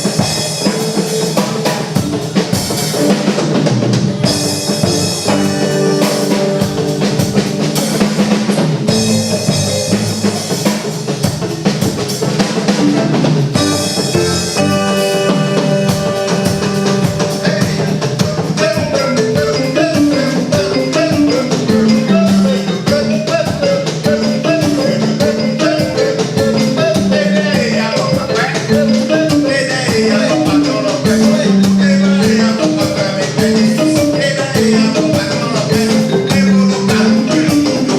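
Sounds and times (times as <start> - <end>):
band music with fast drum beat: 0.0 - 37.9.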